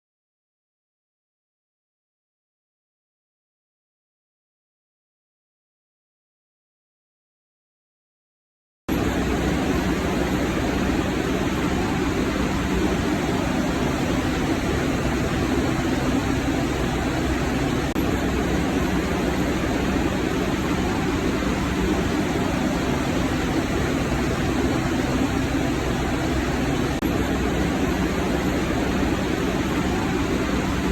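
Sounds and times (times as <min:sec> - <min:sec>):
faint steady hum: 0:08.9 - 0:30.9
subway train rumbling: 0:08.9 - 0:30.9.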